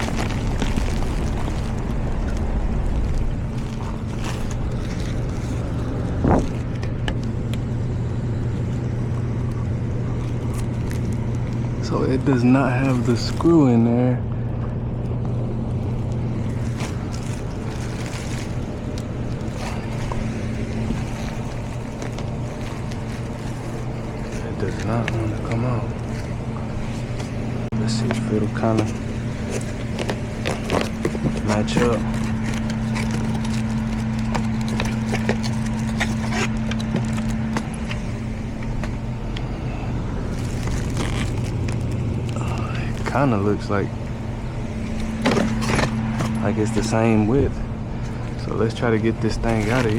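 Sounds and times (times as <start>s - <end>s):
low electrical hum: 0.0s - 49.9s.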